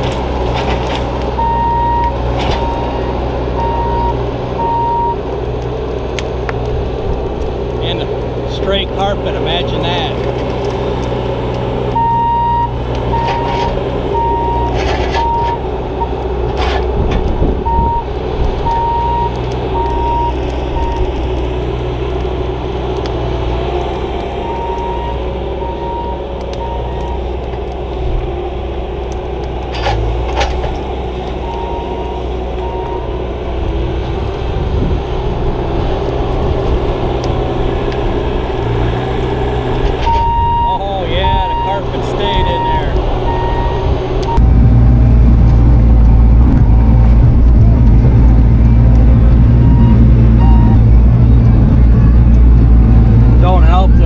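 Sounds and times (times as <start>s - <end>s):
diesel engine running: 0.0s - 54.0s
backup alarm beeping: 1.4s - 5.2s, 12.0s - 13.5s, 14.1s - 15.6s, 17.7s - 18.1s, 18.7s - 21.1s, 24.5s - 27.1s, 31.4s - 33.1s, 40.1s - 41.8s, 42.4s - 44.4s, 49.6s - 50.8s.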